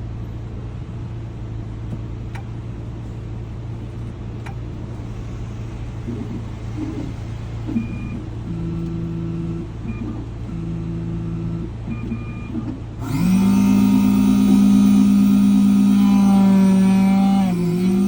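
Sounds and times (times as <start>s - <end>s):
key-cutting machine motor whirring: 13.0s - 18.0s.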